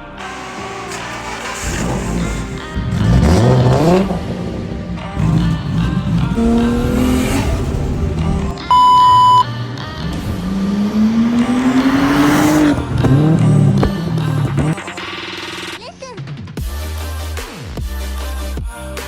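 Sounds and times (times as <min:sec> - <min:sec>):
car engine revving: 0:00.0 - 0:16.0
background music: 0:00.0 - 0:19.0
single-pitch beep: 0:08.6 - 0:09.5.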